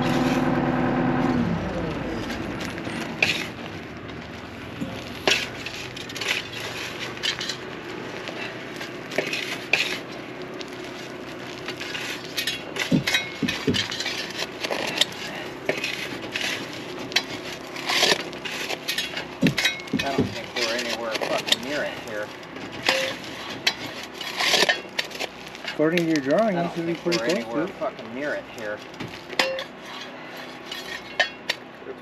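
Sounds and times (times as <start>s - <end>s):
diesel engine idling: 0.0s - 24.2s
metal scraping into dirt and rock: 0.0s - 31.7s.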